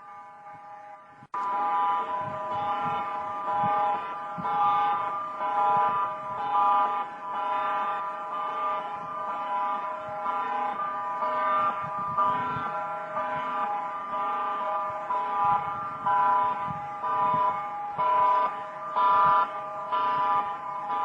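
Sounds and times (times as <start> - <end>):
electronic alarms sounding: 0.0 - 21.0.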